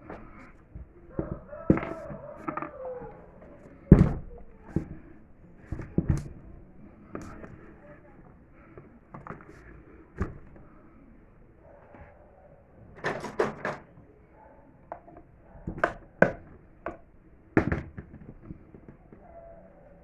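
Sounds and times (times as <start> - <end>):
fan parts knocking and clicking: 0.0 - 6.5, 13.0 - 14.0.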